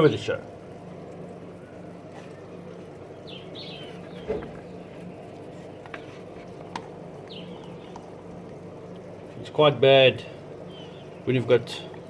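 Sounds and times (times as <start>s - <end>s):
steady low hum: 0.0s - 12.0s
faint bird chirps: 1.6s - 5.2s, 7.2s - 8.0s.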